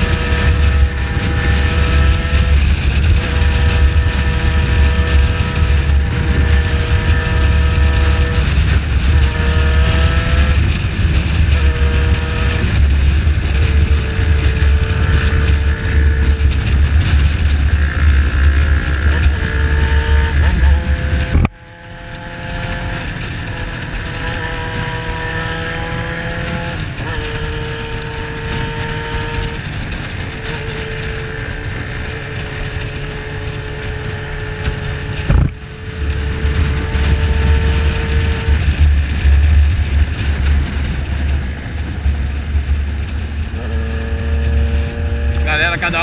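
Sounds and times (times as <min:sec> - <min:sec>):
motorcycle engine cruising: 0:00.0 - 0:46.0
wind rumble on microphone: 0:00.0 - 0:46.0.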